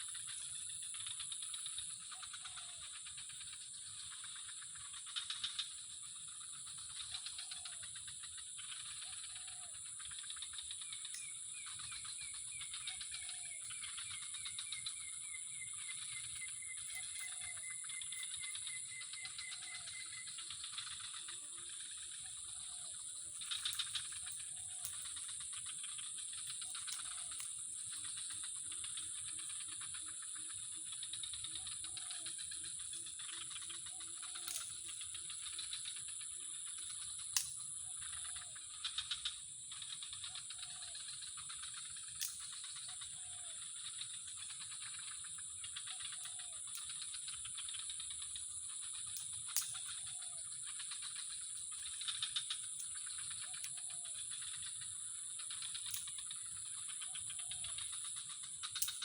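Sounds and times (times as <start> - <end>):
fast pulsing call: 8.7 - 35.0.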